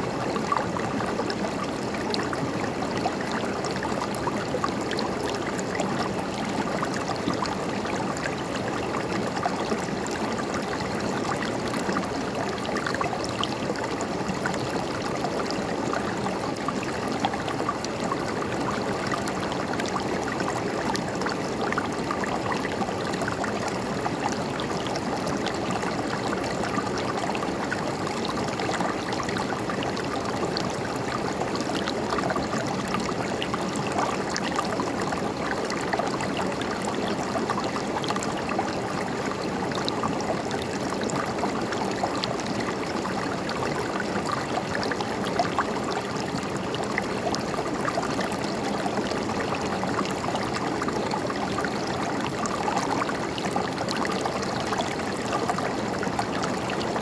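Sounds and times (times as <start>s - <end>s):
river water gurgling over rocks: 0.0s - 57.0s.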